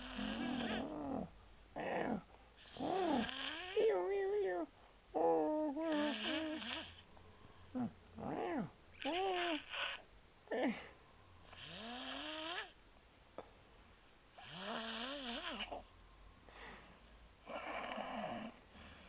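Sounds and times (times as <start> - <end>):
person snoring: 0.0 - 4.0, 5.2 - 7.0, 11.5 - 12.8, 14.4 - 15.9, 17.5 - 19.0.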